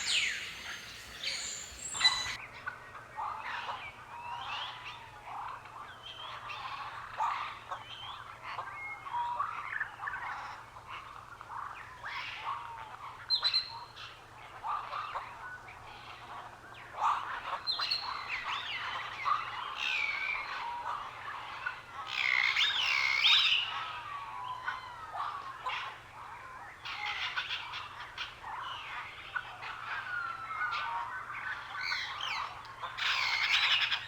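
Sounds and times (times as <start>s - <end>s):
birds chirping and whistling: 0.0s - 2.4s.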